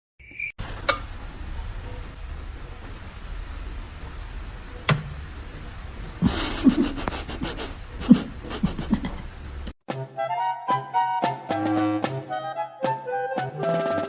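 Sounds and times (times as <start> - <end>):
animal panting: 6.3 - 9.1.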